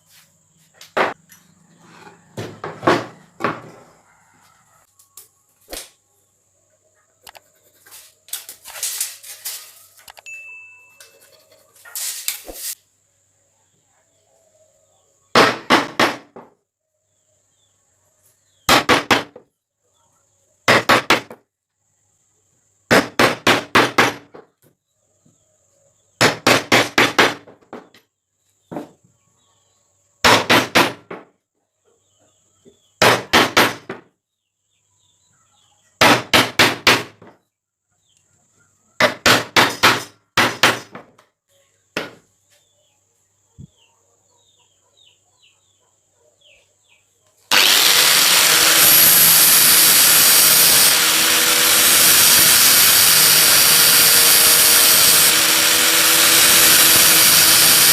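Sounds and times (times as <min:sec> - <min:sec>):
hammer driving nails into wood: 0:15.4 - 0:16.5, 0:18.7 - 0:19.4, 0:22.9 - 0:24.5, 0:26.2 - 0:28.0, 0:30.2 - 0:31.3, 0:33.0 - 0:34.0, 0:36.0 - 0:37.4, 0:39.0 - 0:41.2.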